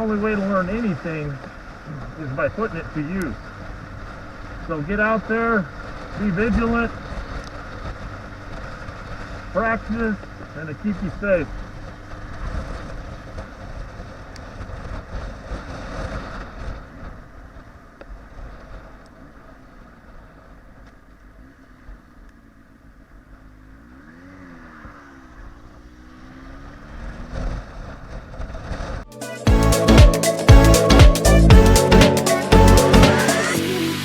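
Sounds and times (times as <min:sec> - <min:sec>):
motorcycle engine running: 0:03.3 - 0:18.0.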